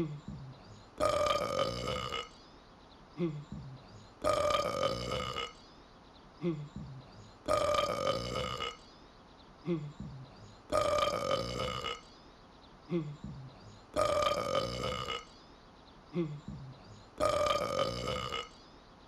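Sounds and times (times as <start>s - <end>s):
loud belch: 1.0s - 2.3s, 4.2s - 5.6s, 7.5s - 8.8s, 10.7s - 12.0s, 14.0s - 15.3s, 17.2s - 18.5s.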